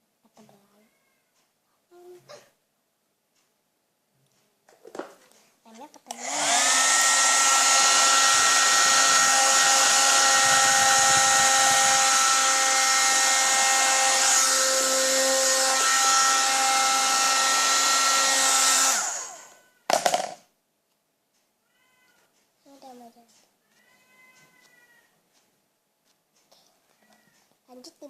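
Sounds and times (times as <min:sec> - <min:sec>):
hair dryer blowing with whine: 0:06.2 - 0:19.6.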